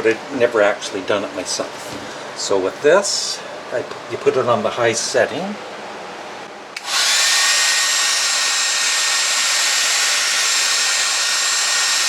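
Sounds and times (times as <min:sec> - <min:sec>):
hair dryer blowing with high whine: 0:06.8 - 0:12.0.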